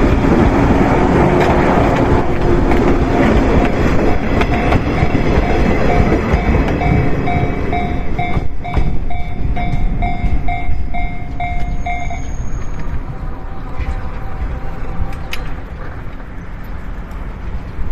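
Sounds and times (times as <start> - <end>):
electric train rumbling past: 0.0 - 17.9
level-crossing warning bell: 3.9 - 15.6.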